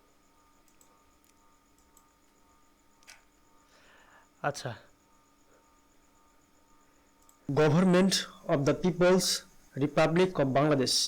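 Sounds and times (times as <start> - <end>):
steady electrical hum: 0.0 - 11.0
faint breath: 3.6 - 4.4.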